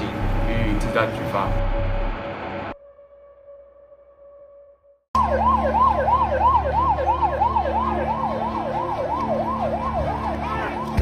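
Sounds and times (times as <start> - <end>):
steady low hum: 0.0 - 2.8
emergency siren yelping: 5.2 - 11.0.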